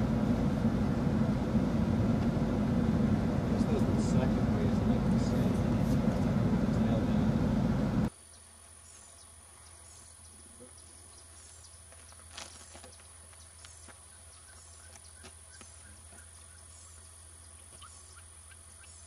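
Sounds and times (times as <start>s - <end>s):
birds calling: 2.8s - 19.0s
small bird chirps: 8.3s - 19.0s.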